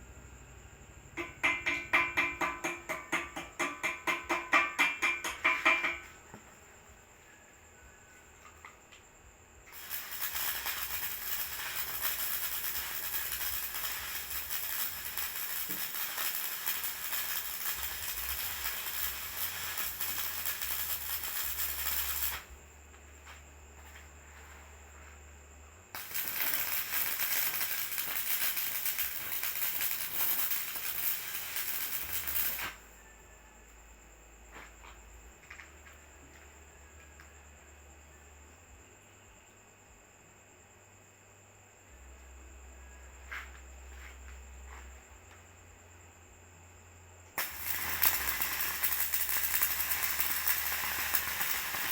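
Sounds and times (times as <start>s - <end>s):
arc welding crackle: 9.7s - 22.6s, 25.9s - 32.8s, 47.4s - 51.9s.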